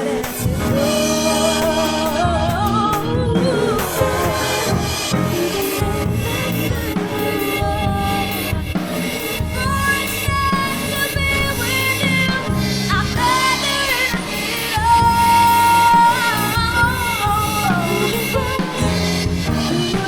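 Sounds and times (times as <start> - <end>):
band with drum kit and cymbals: 0.0 - 20.0
woman singing pop ballad: 0.0 - 20.0.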